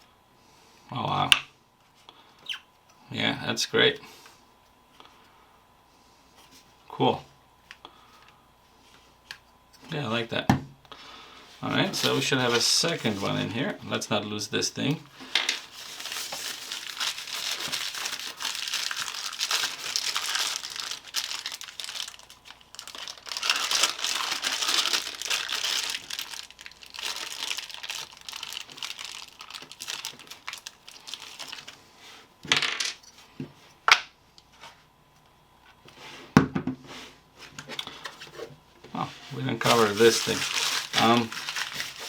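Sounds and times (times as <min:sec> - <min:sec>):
packaging crinkling and rustling: 0:11.6 - 0:13.8, 0:15.0 - 0:31.9, 0:39.4 - 0:42.0.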